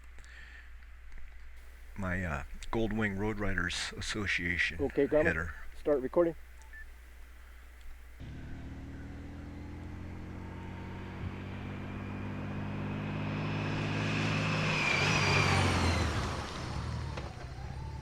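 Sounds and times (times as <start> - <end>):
motorcycle engine approaching: 8.2 - 18.0
road and wind noise: 8.2 - 18.0.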